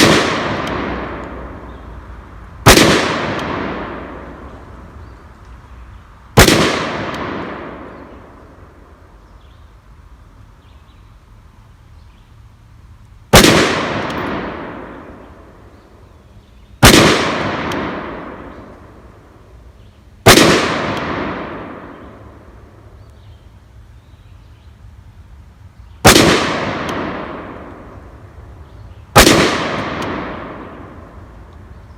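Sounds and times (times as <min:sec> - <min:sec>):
gunshots echoing: 0:00.0 - 0:01.8, 0:02.6 - 0:04.6, 0:06.4 - 0:08.4, 0:13.3 - 0:15.6, 0:16.8 - 0:19.0, 0:20.2 - 0:22.5, 0:26.0 - 0:28.0, 0:29.1 - 0:31.2.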